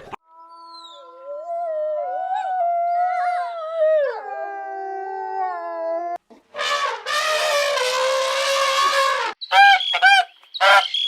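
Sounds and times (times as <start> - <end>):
harsh rasping animal call: 6.6 - 10.9.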